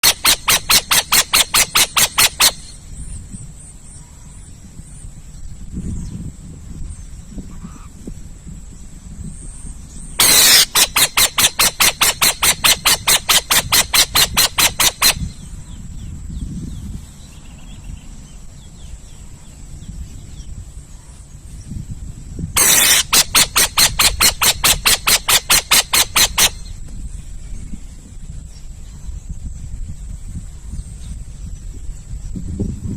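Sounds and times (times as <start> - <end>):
owl rasping call: 0.0 - 2.8, 7.5 - 8.0, 10.2 - 15.5, 22.6 - 26.8.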